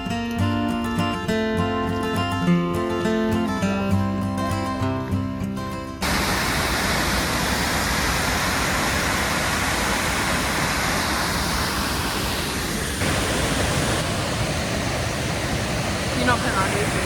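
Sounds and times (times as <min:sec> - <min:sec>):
acoustic guitar music: 0:00.0 - 0:06.3
waterfall roar: 0:06.0 - 0:17.0.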